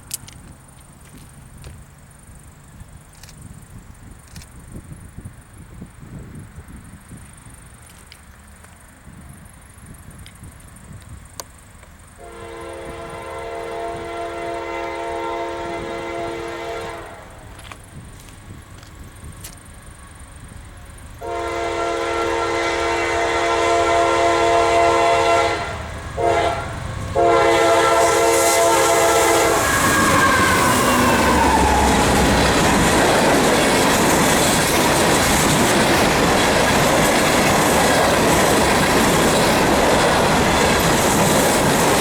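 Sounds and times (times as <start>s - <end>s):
train wheel and rail clatter: 0.0s - 42.0s
train air horn chord: 12.2s - 17.5s, 21.2s - 32.2s.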